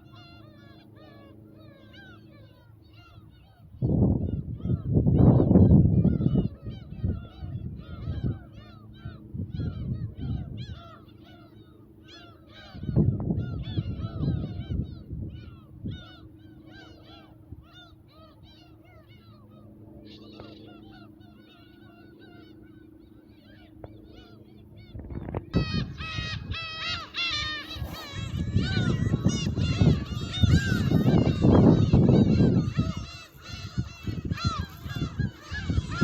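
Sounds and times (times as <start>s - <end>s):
gulls calling: 0.0s - 36.0s
wind rumbling on microphone: 3.7s - 10.9s, 12.6s - 16.2s, 24.7s - 36.0s.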